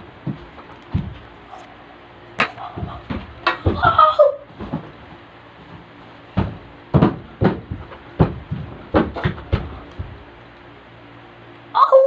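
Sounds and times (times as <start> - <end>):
thumps: 2.4 - 10.3.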